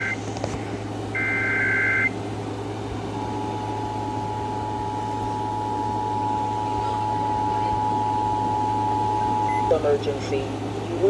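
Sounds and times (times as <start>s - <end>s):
low radio hum: 0.0s - 11.0s
two-tone attention signal: 1.2s - 2.1s, 3.2s - 9.8s.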